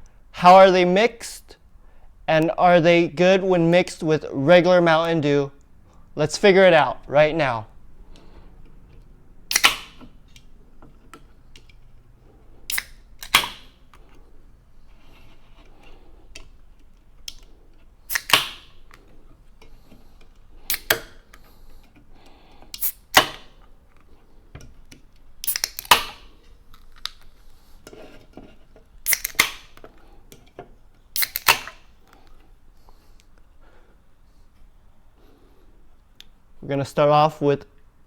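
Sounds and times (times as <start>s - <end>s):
sharp cracks with hissing tails: 9.5s - 10.0s, 31.2s - 31.9s.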